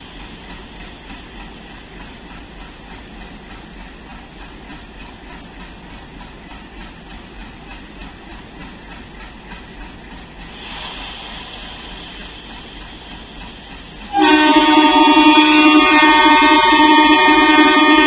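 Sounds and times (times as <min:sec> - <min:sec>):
diesel locomotive humming: 0:10.7 - 0:18.0.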